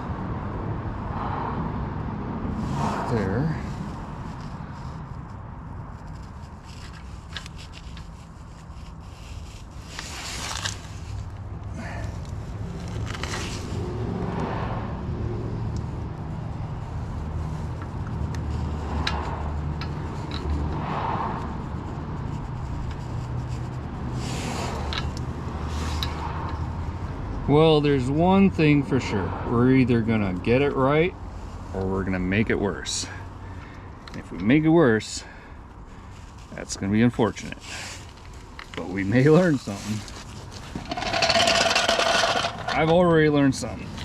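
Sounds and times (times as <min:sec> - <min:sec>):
thread die scraping on metal: 0:40.7 - 0:43.0.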